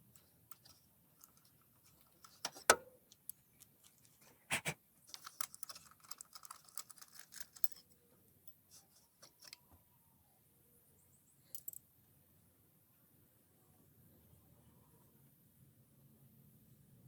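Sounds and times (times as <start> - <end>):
metallic clicks of tools: 5.1 - 8.0.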